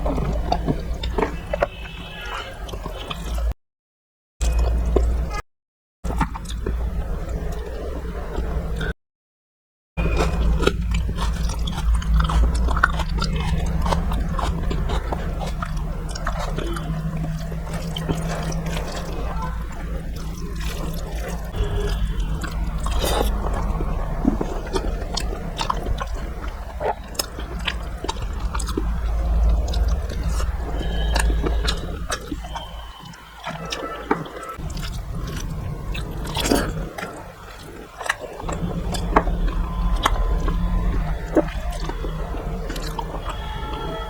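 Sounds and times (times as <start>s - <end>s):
wet mouth clicks: 10.0s - 19.4s, 20.2s - 43.5s
low hum: 10.0s - 44.0s
person chewing food: 10.0s - 44.0s.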